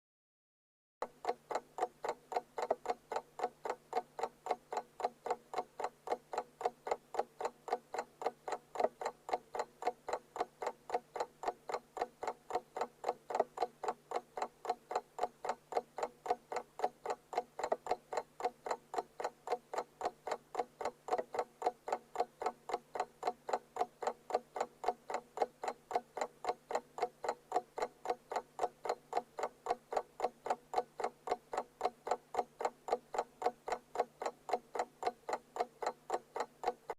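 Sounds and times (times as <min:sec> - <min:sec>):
alarm clock ticking: 0:01.0 - 0:36.9.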